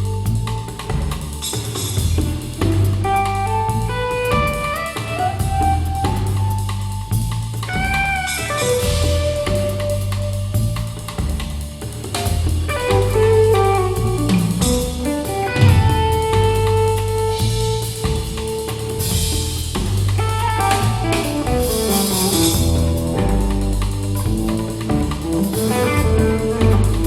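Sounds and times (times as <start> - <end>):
band music over loudspeaker: 20.2 - 27.0.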